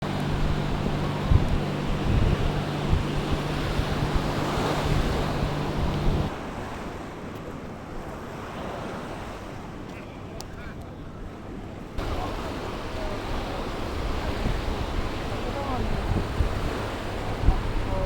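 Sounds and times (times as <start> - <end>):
low steady hum: 0.0 - 6.3
wind buffeting microphone: 0.0 - 6.8, 11.3 - 18.0
sea waves: 0.0 - 18.0.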